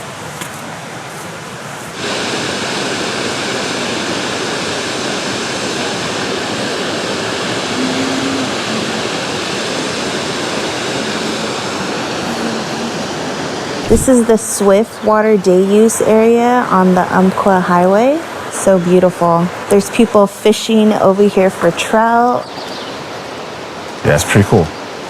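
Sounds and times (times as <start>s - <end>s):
waterfall rushing: 1.9s - 16.1s, 16.7s - 18.6s, 22.6s - 25.0s.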